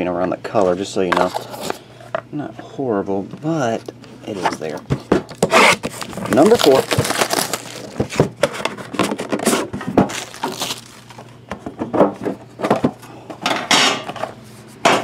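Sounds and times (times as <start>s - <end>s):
packaging scraping rustle: 1.2s - 1.9s, 4.2s - 11.4s.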